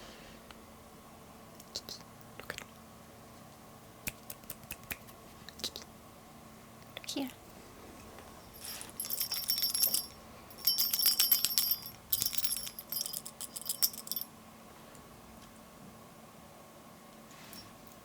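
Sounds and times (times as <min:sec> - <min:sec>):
metallic jingling: 0:08.3 - 0:14.3.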